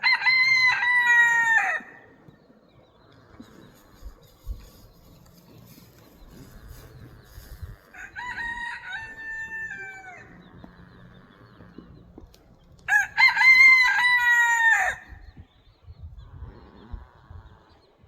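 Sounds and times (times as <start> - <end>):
rooster crowing: 0.0 - 2.0, 7.9 - 10.4, 12.9 - 15.1.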